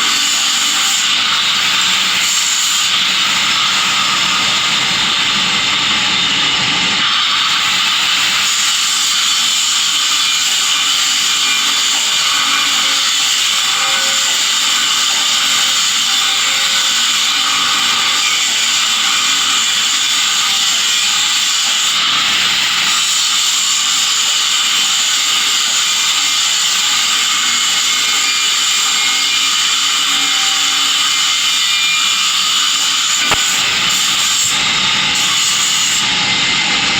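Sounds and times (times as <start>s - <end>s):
welding arc hissing: 32.6s - 34.6s.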